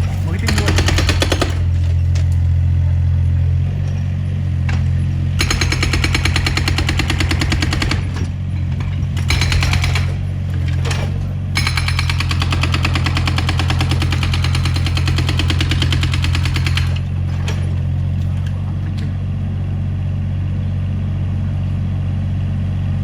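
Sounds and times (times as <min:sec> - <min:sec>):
hydraulic breaker hammering: 0:00.1 - 0:02.3, 0:04.7 - 0:19.1.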